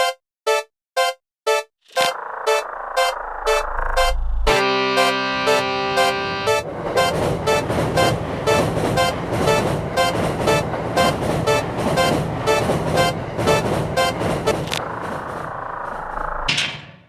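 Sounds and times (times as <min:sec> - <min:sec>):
passing train rumble: 0:04.2 - 0:16.5
railroad crossing bell ringing: 0:04.5 - 0:14.8.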